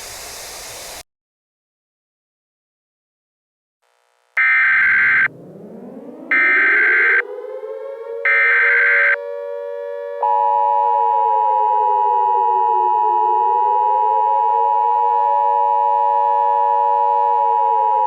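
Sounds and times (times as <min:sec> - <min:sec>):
two-tone attention signal: 0:04.4 - 0:05.4, 0:06.3 - 0:07.3, 0:08.3 - 0:09.2
siren winding up: 0:04.4 - 0:18.0.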